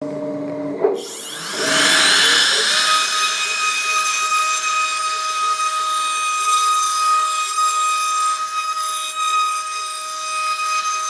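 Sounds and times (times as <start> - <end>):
low machine hum: 1.0 - 5.6
router spindle whine: 1.0 - 11.0.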